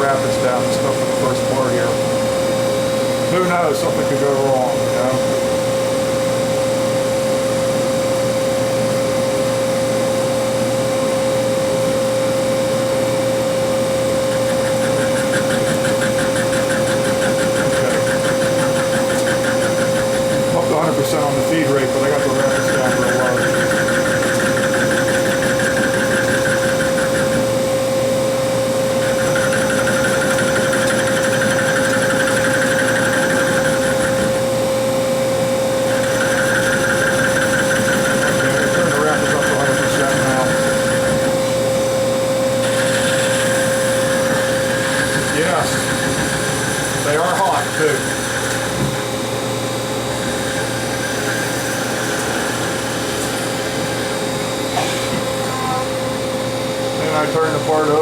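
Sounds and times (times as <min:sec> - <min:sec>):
lathe whine: 0:00.0 - 0:58.0.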